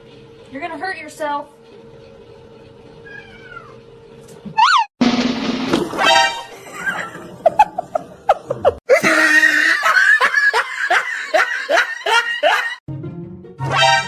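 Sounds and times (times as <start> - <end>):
person laughing hard: 6.5 - 12.8
low music: 12.9 - 14.0.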